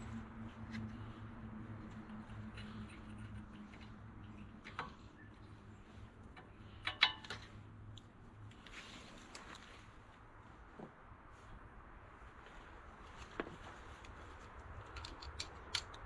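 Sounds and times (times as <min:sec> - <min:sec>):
low steady hum: 0:00.0 - 0:16.0.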